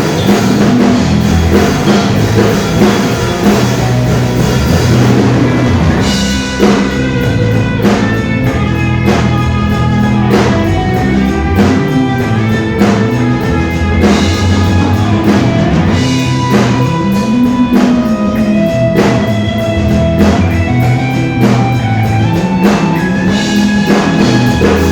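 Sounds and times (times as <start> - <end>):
instrumental rock band music: 0.0 - 24.9.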